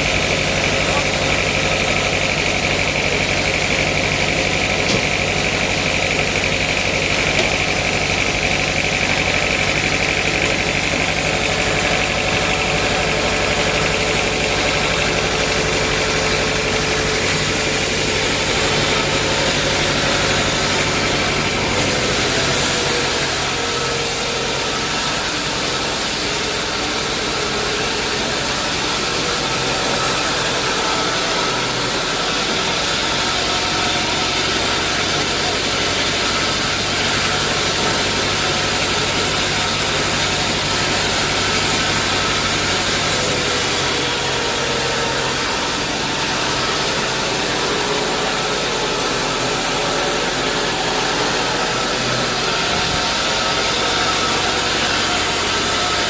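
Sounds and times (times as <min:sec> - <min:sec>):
sawmill machinery drone: 0:00.0 - 0:56.0
higher machine hiss: 0:14.2 - 0:32.1.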